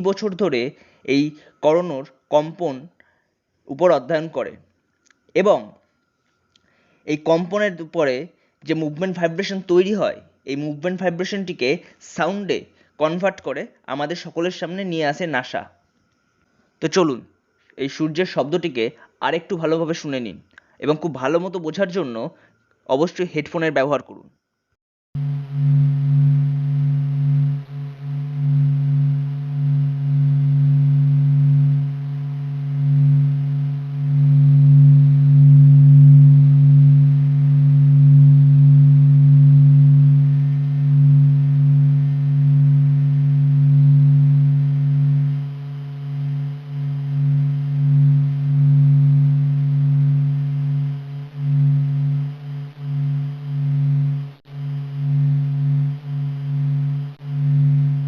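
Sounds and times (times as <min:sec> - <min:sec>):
low drone of held tones: 0:25.2 - 0:58.0.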